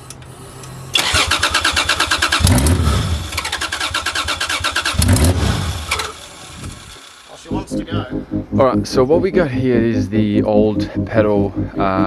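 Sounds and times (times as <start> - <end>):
starter motor cranking engine: 0.0 - 7.4
engine briefly firing: 0.4 - 7.6.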